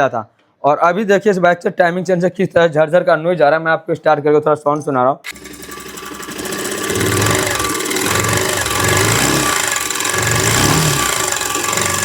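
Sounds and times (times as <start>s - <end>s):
motorcycle engine running: 5.3s - 12.0s
timing chain rattle: 5.3s - 12.0s.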